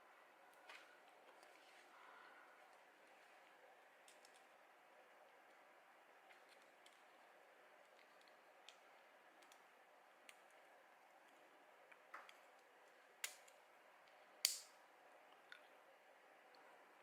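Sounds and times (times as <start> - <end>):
sharp plastic snaps: 13.2 - 13.6, 14.4 - 14.8.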